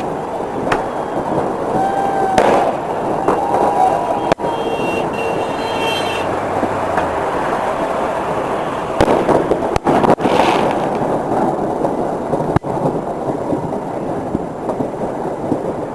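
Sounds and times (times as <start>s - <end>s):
fireworks crackling pops: 0.0s - 6.0s, 6.6s - 15.9s
firework whistle: 0.0s - 6.3s.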